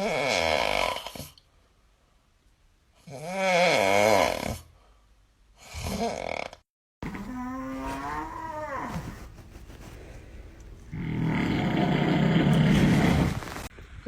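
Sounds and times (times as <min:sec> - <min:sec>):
person snoring loudly: 0:00.0 - 0:01.4, 0:03.0 - 0:04.7, 0:10.9 - 0:13.5.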